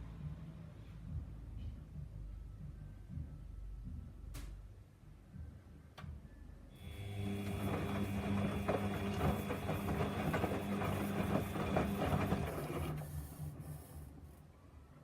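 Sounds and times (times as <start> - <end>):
washing machine motor hum: 6.8 - 14.1.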